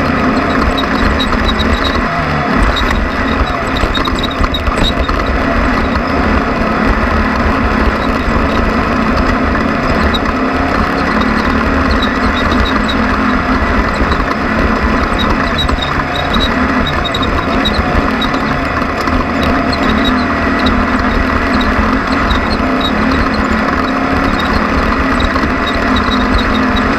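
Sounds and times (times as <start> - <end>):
race vehicle engine running: 0.0 - 26.9.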